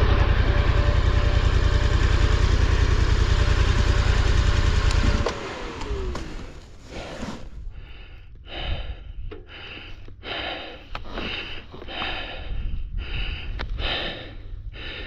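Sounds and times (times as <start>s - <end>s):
man breathing heavily: 6.8s - 15.0s.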